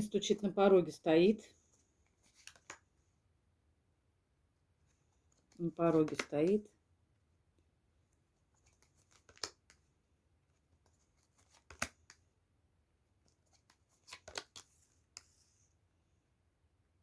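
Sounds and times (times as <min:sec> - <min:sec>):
cards rustling: 0:01.8 - 0:03.0, 0:05.2 - 0:06.7, 0:08.5 - 0:09.8, 0:10.8 - 0:12.2, 0:13.3 - 0:15.6
cards snapping and tapping: 0:02.4 - 0:02.8, 0:05.9 - 0:06.5, 0:08.6 - 0:09.8, 0:11.4 - 0:12.2, 0:13.6 - 0:15.3.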